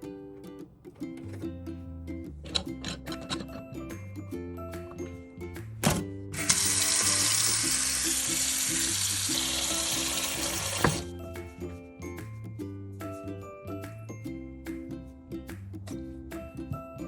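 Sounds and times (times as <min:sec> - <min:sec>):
tap water running into sink: 0:05.8 - 0:11.1.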